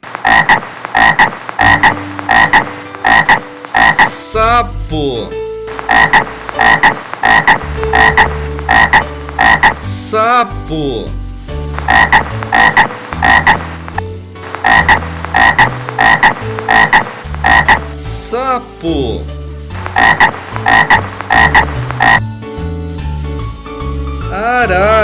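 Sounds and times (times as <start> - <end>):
frog croaking: 0.0 - 4.3, 5.8 - 10.0, 11.8 - 14.0, 14.6 - 18.3, 19.8 - 22.2.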